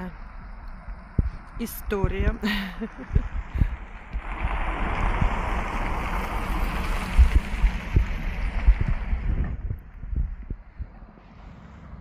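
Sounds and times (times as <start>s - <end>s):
wind buffeting microphone: 0.0s - 12.0s
sea water splashing at shore: 4.1s - 8.2s.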